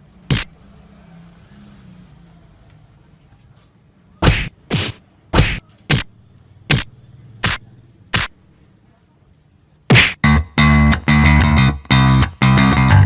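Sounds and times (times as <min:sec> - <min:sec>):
punch whacks: 0:00.3 - 0:00.6, 0:04.2 - 0:06.1, 0:06.7 - 0:08.3, 0:09.9 - 0:10.2.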